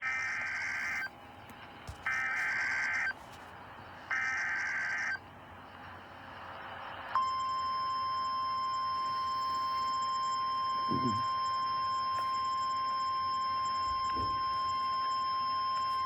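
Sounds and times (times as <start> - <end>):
warbling data tones: 0.0 - 1.1, 2.0 - 3.2, 4.1 - 5.2
static: 1.9 - 3.2.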